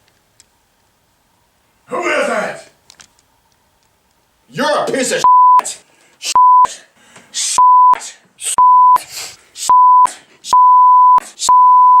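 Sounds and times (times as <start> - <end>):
censor bleeps: 5.2 - 5.6, 6.4 - 6.7, 7.6 - 8.0, 8.6 - 9.0, 9.7 - 12.0.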